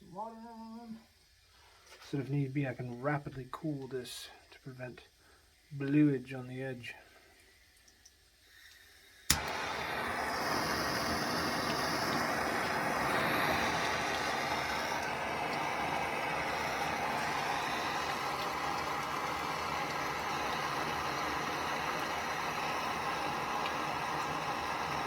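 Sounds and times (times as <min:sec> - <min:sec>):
gas torch flame hissing: 0:08.4 - 0:25.0.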